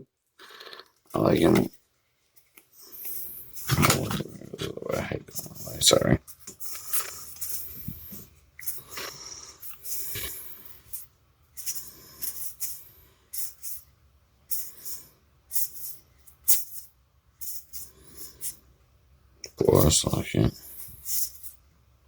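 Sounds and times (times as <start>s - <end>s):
cards being flipped through: 3.0s - 5.7s.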